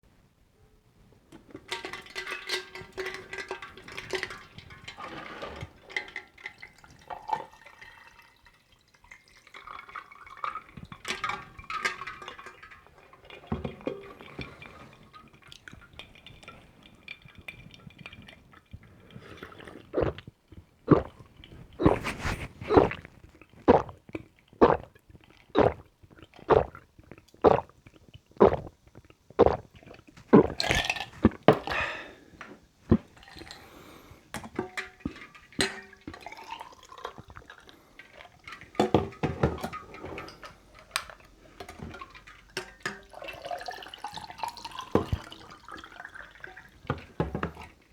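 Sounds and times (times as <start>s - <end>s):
ice clinking: 1.4s - 20.2s, 29.4s - 32.2s, 32.9s - 47.9s
water pouring from kettle: 1.4s - 47.9s
loud swallowing gulps: 18.2s - 32.2s, 32.8s - 33.4s.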